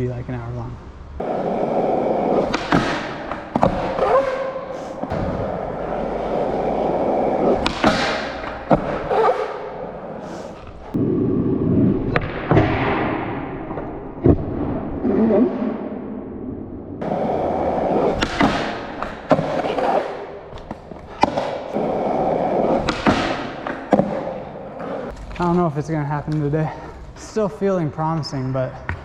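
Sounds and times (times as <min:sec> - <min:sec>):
skateboard clacks and thuds: 0:01.2 - 0:09.6, 0:17.0 - 0:25.2
skateboard wheels rolling on pavement: 0:01.2 - 0:12.2, 0:17.0 - 0:26.6.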